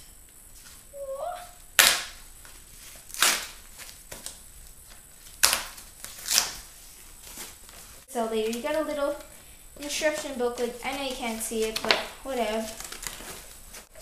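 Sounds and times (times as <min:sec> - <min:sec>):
packaging crackling: 0:10.6 - 0:14.0.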